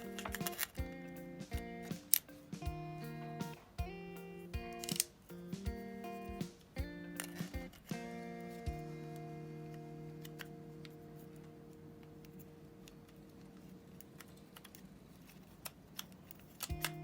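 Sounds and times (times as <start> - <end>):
held music chord: 0.0 - 13.6
guitar music: 0.0 - 14.6, 16.7 - 17.0
small parts and tools clicking: 12.2 - 17.0.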